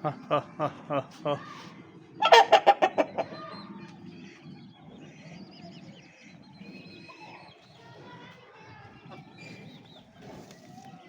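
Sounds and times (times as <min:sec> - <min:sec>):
chicken clucking: 0:02.2 - 0:03.9.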